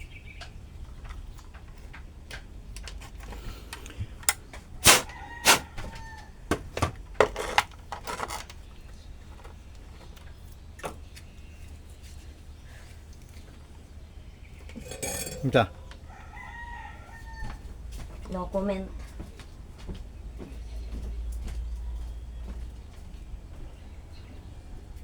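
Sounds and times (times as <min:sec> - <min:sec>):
objects clicking and knocking: 0:04.2 - 0:05.7, 0:06.5 - 0:08.6.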